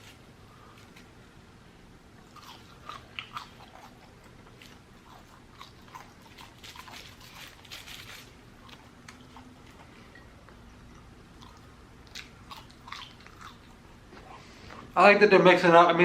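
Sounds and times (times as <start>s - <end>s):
person chewing crunchy food: 2.2s - 15.0s.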